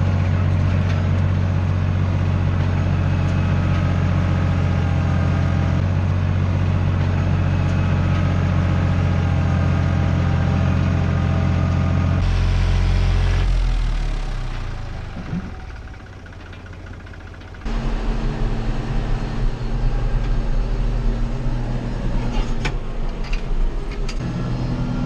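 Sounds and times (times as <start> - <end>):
tractor diesel engine running: 0.0 - 25.0.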